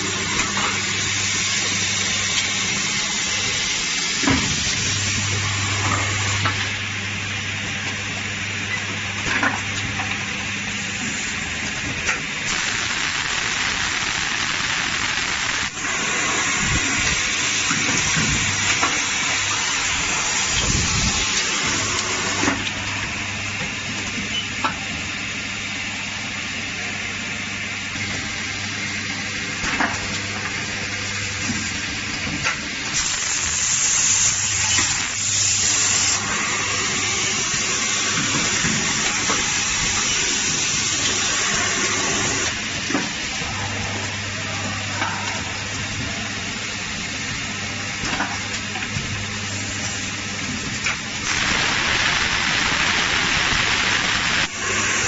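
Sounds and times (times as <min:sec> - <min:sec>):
low machine hum: 0:00.0 - 0:32.9
machine hiss: 0:12.5 - 0:22.6, 0:32.9 - 0:42.6, 0:51.2 - 0:55.0.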